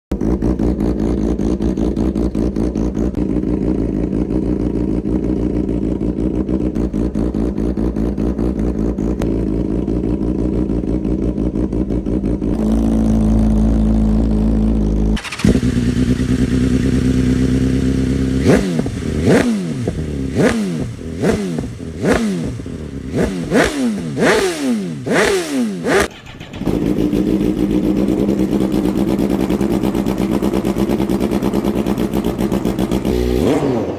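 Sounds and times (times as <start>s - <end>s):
motorcycle engine idling: 0.1s - 33.6s
engine throttle blips: 15.0s - 33.9s.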